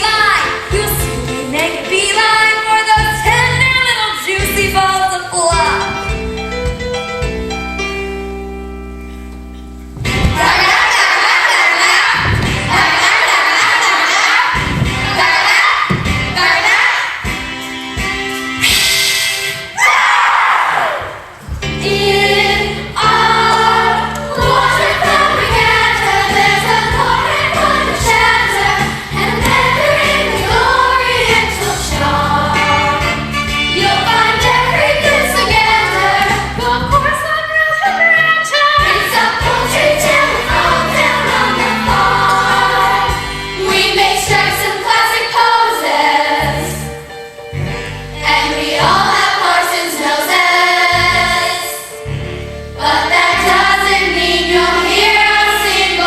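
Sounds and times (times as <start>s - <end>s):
cast singing together: 10.3s - 17.3s, 20.9s - 37.2s, 38.5s - 46.9s, 48.2s - 52.0s, 52.8s - 56.0s
instrumental accompaniment: 21.2s - 37.2s.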